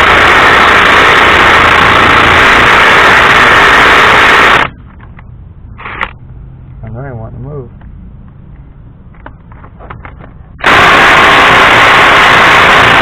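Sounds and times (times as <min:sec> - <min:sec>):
impact driver hammering: 0:10.6 - 0:13.0.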